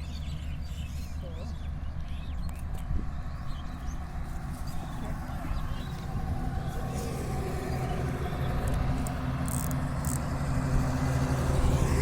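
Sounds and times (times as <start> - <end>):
engine running: 0.0 - 12.0.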